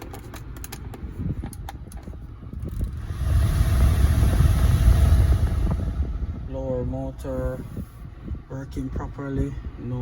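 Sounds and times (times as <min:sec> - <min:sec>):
air rushing through vents: 0:01.2 - 0:08.8
blower motor running at high speed: 0:02.8 - 0:06.5.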